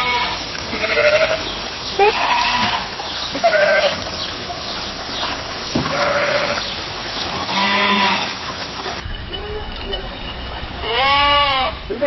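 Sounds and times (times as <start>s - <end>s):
sheep bleating: 0.0s - 1.4s, 2.0s - 4.0s, 5.9s - 6.7s, 7.4s - 8.4s, 10.8s - 11.9s
steady background hiss: 0.0s - 12.0s.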